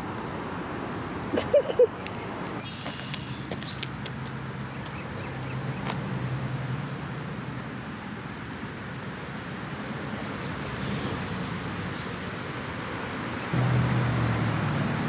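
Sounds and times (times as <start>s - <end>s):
distant traffic hum: 0.0s - 15.0s
small birds chirping: 2.0s - 6.0s, 9.4s - 14.6s.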